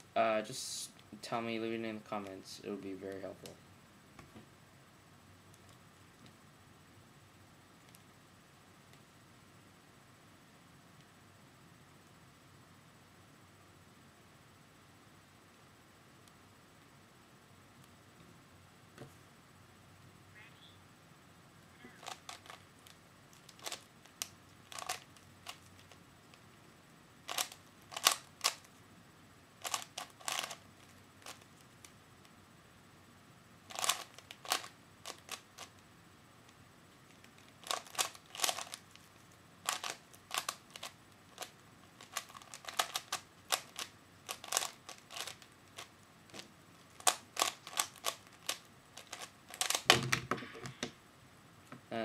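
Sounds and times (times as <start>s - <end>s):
puzzle cube clicking turns: 22.0s - 26.5s, 27.2s - 28.8s, 29.6s - 32.0s, 33.7s - 35.8s, 36.4s - 51.0s.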